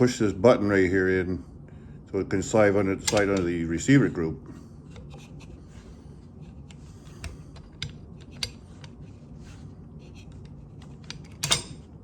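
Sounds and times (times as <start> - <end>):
rifle parts clicking and sliding: 3.0 - 3.5, 6.4 - 11.9.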